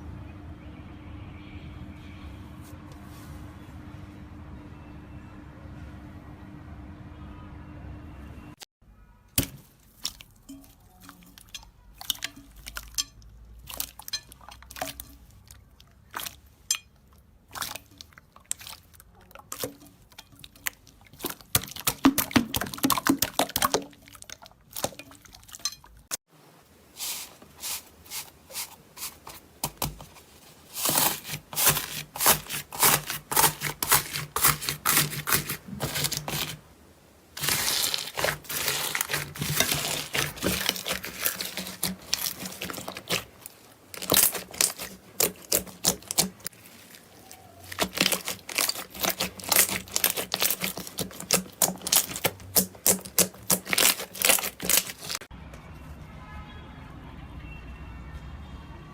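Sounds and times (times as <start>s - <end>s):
slime crackling and popping: 37.4s - 55.2s.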